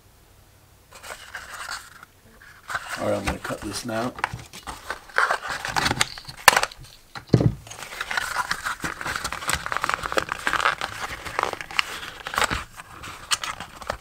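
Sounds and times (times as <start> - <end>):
packaging crinkling as cut open: 2.6 - 6.9, 7.7 - 14.0
thump: 7.3 - 7.7.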